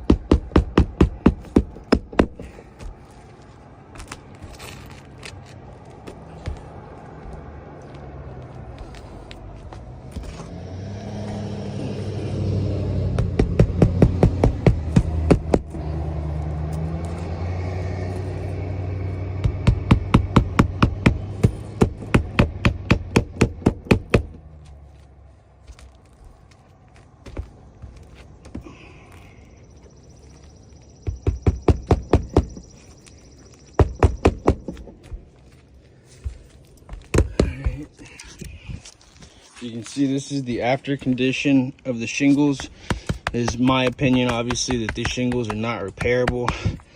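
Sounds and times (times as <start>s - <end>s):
low engine rumble: 0.0s - 46.9s
hammer driving nails: 19.4s - 24.4s, 31.1s - 32.6s, 33.8s - 34.9s, 42.5s - 46.9s.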